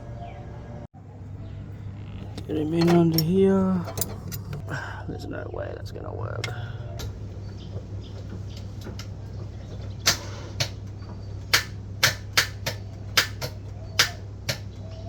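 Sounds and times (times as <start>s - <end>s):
low hum: 0.0s - 9.7s
spanner clinking on bolt: 2.2s - 4.7s.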